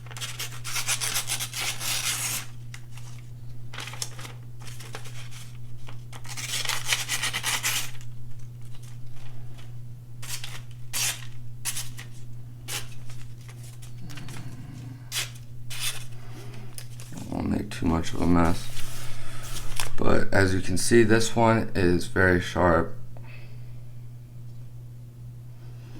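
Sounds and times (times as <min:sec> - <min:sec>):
knife slicing through paper: 0:00.0 - 0:08.1, 0:10.2 - 0:13.8, 0:15.1 - 0:16.2
steady low hum: 0:00.0 - 0:25.9.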